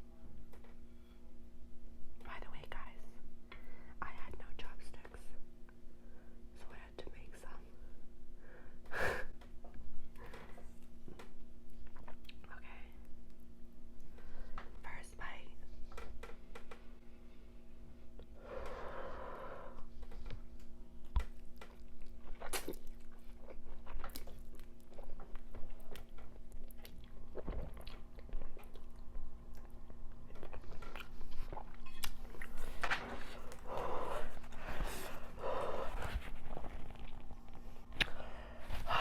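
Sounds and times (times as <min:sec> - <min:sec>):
chewing noodles: 0:21.4 - 0:33.6
breathy noises: 0:32.5 - 0:39.0.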